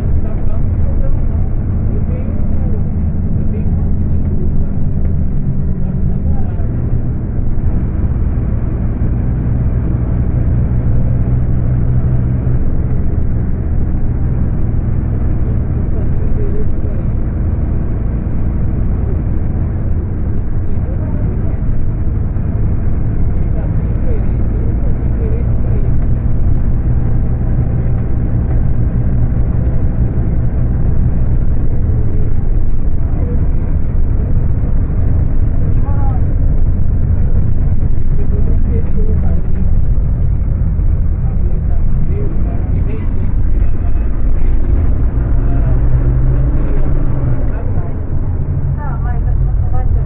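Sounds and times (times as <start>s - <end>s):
bus diesel engine droning: 0.0s - 50.0s.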